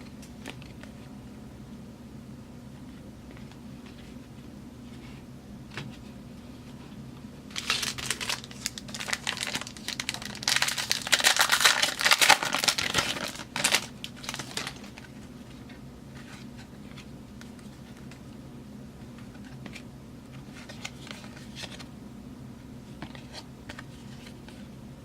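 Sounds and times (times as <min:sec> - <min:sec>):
foil wrapper crinkling and tearing: 0:07.5 - 0:15.0.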